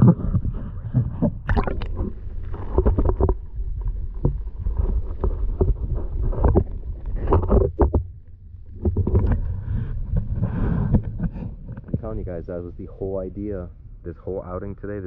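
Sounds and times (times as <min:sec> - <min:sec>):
low rumble: 0:00.0 - 0:15.0
kayak hull scraping on ice: 0:01.8 - 0:12.2.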